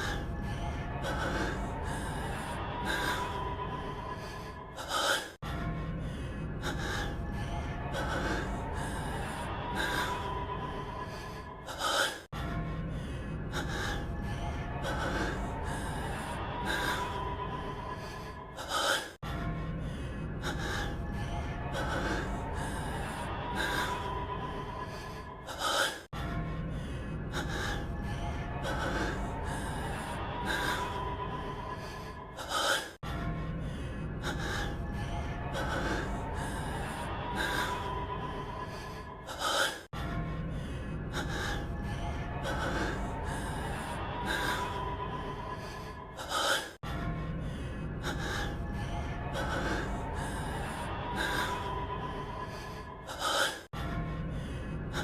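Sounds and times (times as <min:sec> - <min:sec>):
faint background music: 0:00.0 - 0:55.0
man gasping breathing: 0:17.7 - 0:23.8, 0:24.8 - 0:55.0.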